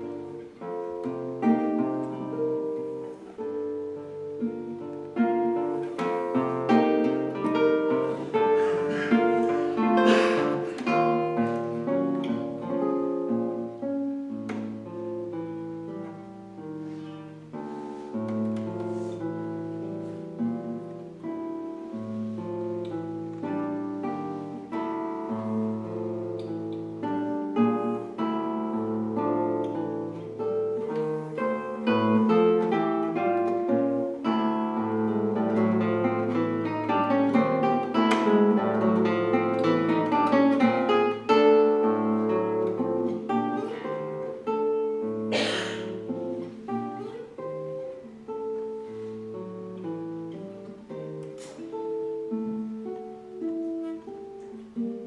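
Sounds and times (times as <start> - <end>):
classical guitar fingerstyle: 0.0 - 55.0.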